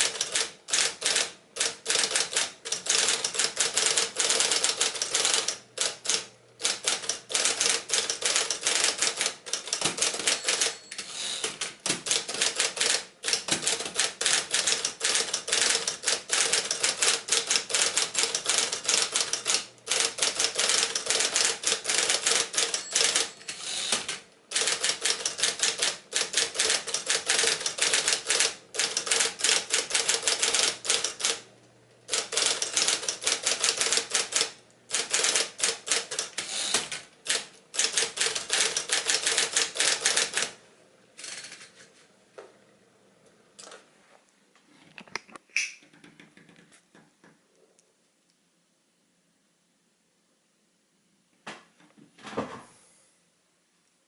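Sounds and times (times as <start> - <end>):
typewriter hum: 0.0 - 31.5, 32.1 - 40.6
typewriter key strikes: 0.1 - 11.1, 11.8 - 31.4.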